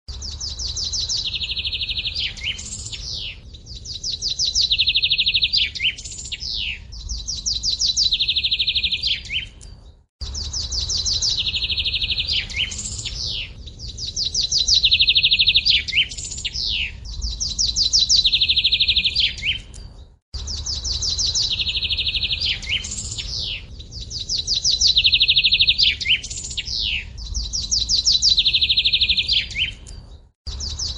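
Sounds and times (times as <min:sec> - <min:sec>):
bird trills and chirps: 0:00.1 - 0:30.9.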